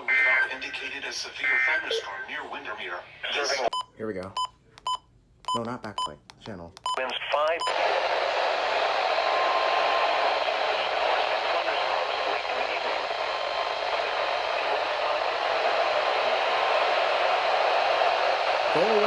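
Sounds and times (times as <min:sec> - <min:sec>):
radio static hiss: 0:07.0 - 0:19.0.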